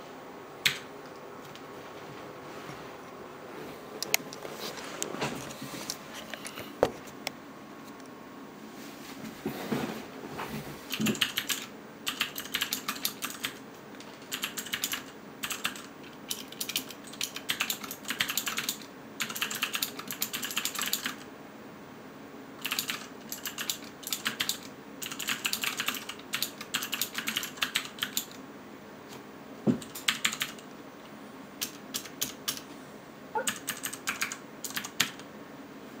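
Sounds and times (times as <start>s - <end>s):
clicky mechanical keyboard typing: 0.6s - 1.6s, 10.9s - 21.3s, 22.6s - 28.4s, 29.8s - 30.6s, 31.6s - 32.7s, 33.4s - 35.3s.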